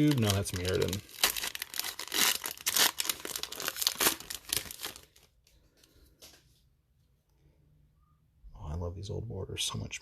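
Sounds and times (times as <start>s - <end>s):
foil wrapper crinkling and tearing: 0.0s - 5.3s.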